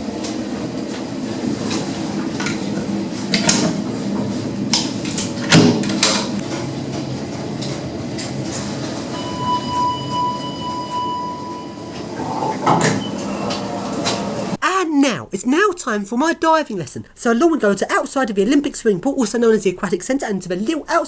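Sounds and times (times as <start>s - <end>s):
lift rumbling and humming: 0.0s - 14.6s
electronic beep: 9.1s - 13.5s.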